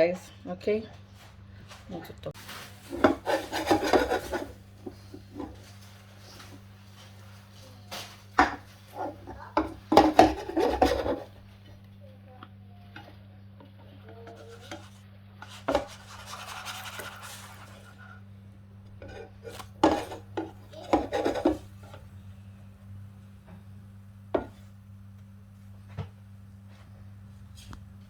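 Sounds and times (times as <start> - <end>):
steady low hum: 0.0 - 28.0
utensils scraping: 2.5 - 5.6, 14.3 - 18.2, 19.0 - 22.0
dishes clattering: 8.4 - 11.3, 18.9 - 21.7
utensils knocking on a frying pan: 9.6 - 11.2, 19.8 - 21.7.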